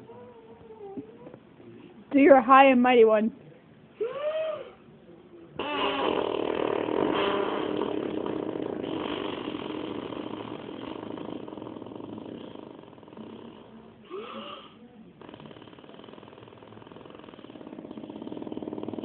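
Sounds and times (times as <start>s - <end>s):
child making fart noise: 5.6s - 12.5s.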